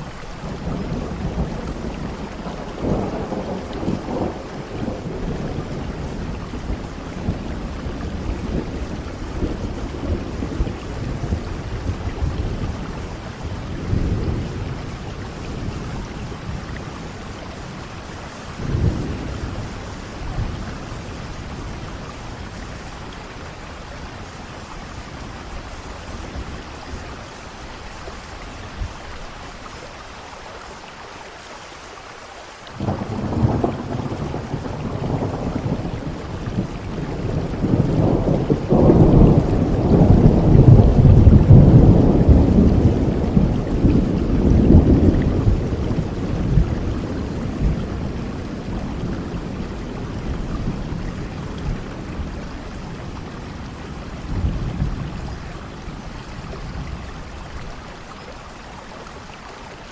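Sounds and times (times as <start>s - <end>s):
steady rain: 0.0s - 59.9s
thunder rolling: 32.8s - 57.5s.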